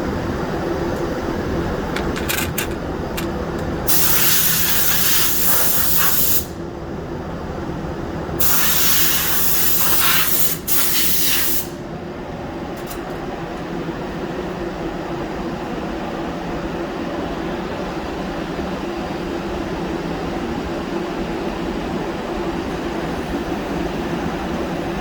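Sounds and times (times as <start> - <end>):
low hum of shop machinery: 0.0 - 25.0
spray gun hissing blasts: 3.9 - 6.5, 8.4 - 11.7.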